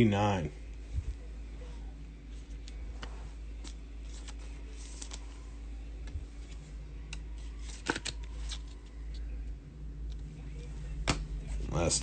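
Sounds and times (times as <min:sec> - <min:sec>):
steady low hum: 0:00.0 - 0:12.0
cards rustling and clicking: 0:02.3 - 0:09.3
cards snapping: 0:03.6 - 0:05.2, 0:06.4 - 0:09.2.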